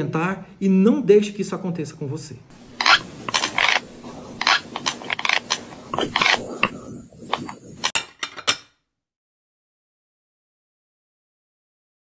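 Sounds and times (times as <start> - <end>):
sharp clicks: 2.8 - 3.8
teeth grinding: 2.8 - 8.0.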